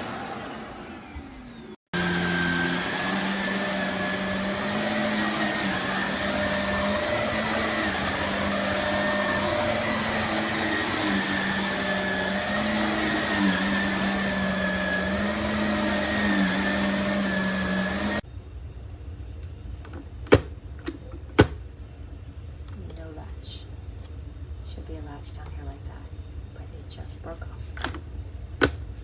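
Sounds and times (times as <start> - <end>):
vacuum cleaner running: 0.0 - 18.2.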